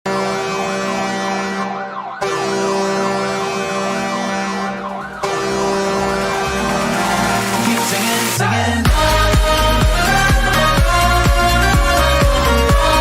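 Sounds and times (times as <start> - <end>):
goal horn blasts: 0.1 - 7.6
siren wailing: 0.1 - 8.4.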